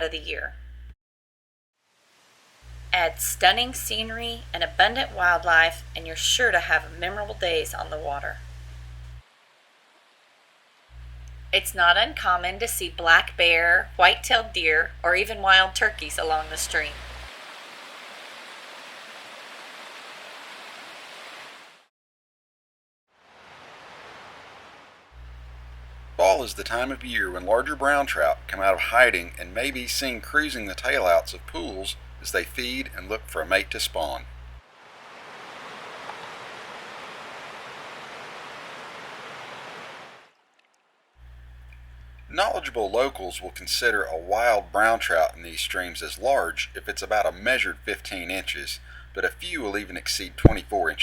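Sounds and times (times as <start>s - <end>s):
stream water flowing: 16.9s - 21.8s, 23.3s - 25.0s, 34.6s - 40.8s.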